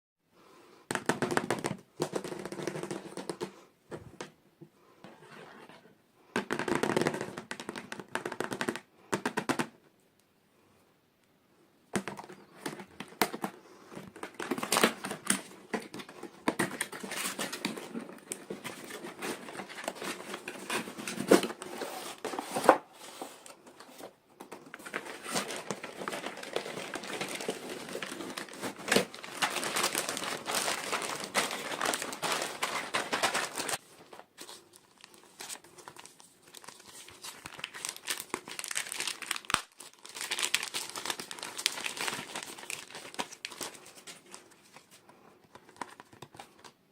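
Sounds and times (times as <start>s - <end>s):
plastic packaging crinkling and tearing: 14.0s - 21.9s, 24.6s - 46.7s.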